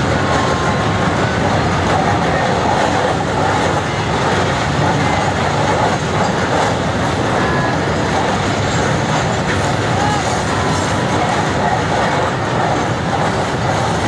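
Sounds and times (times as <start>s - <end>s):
train wagons rumbling and rattling: 0.0s - 14.0s.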